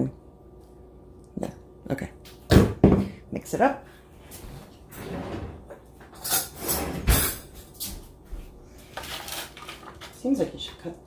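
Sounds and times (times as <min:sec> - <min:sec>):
vegetables rustling in baking tray: 0:08.7 - 0:11.0.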